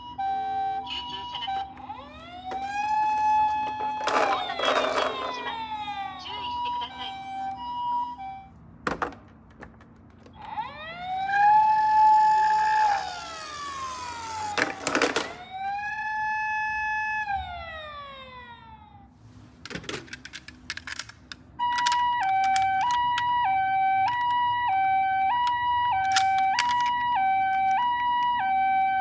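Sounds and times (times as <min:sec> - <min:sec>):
siren wailing: 0:00.0 - 0:08.5, 0:10.3 - 0:19.1, 0:21.6 - 0:29.0
two-tone ambulance siren: 0:00.0 - 0:08.7, 0:10.3 - 0:19.2, 0:21.6 - 0:29.0
clicks and knocks: 0:01.6 - 0:05.9.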